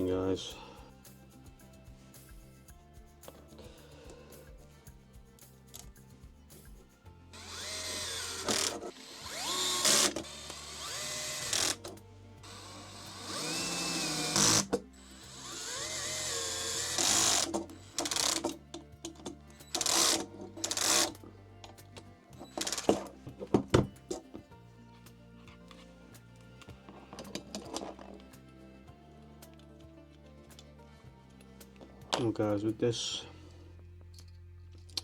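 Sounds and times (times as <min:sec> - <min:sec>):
background music: 0:00.0 - 0:35.0
electric screwdriver motor whine: 0:07.4 - 0:18.6, 0:19.6 - 0:21.2, 0:22.4 - 0:24.2.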